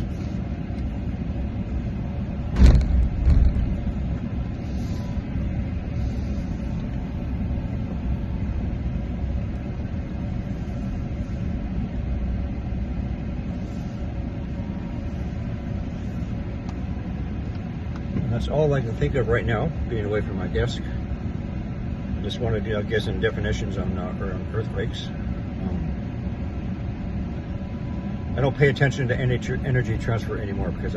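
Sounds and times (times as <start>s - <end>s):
low background rumble: 0.0s - 30.9s
short thumps: 2.5s - 3.9s.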